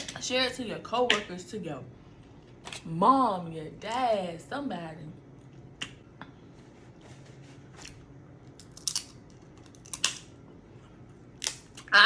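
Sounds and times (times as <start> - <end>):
crab shells cracking: 8.5 - 10.4, 11.3 - 11.9.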